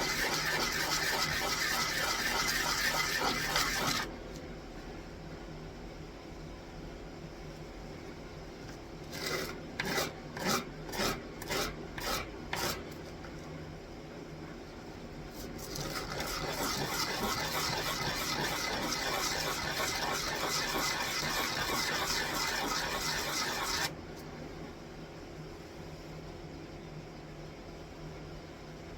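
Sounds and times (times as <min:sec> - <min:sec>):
sanding wood by hand: 0:00.0 - 0:04.1, 0:09.2 - 0:12.8, 0:15.7 - 0:23.9.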